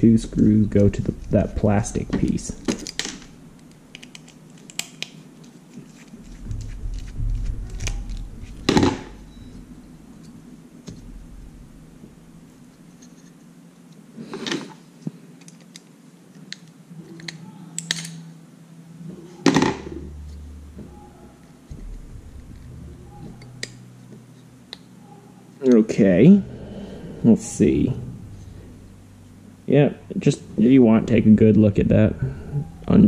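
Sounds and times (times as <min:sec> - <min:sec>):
plastic parts clicking and clattering: 0:02.1 - 0:09.1, 0:14.3 - 0:18.3.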